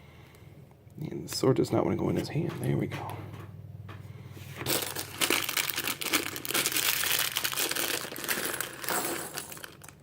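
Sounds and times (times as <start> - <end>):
plastic bag crinkling: 4.6 - 10.0.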